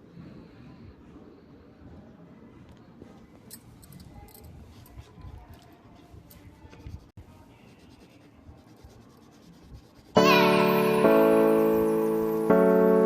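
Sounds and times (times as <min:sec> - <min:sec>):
drawing tool scratching paper: 0:04.6 - 0:10.2.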